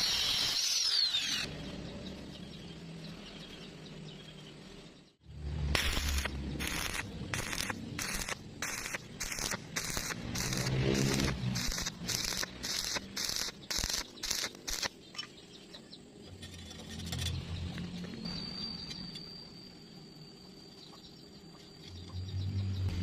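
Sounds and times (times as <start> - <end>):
welding arc crackling: 5.6 - 15.0.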